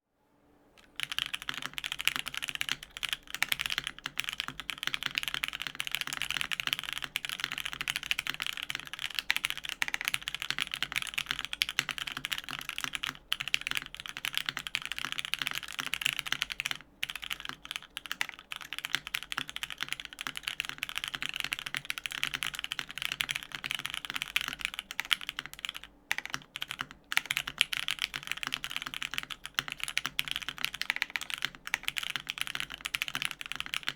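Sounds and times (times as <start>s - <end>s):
fast mechanical keyboard typing: 0.8s - 33.9s.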